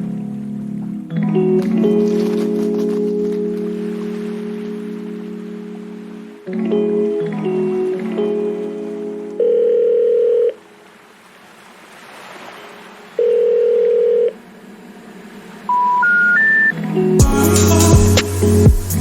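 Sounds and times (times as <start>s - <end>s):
sustained music chords: 0.0s - 9.4s, 16.7s - 19.0s
electronic beep tones: 15.7s - 16.8s.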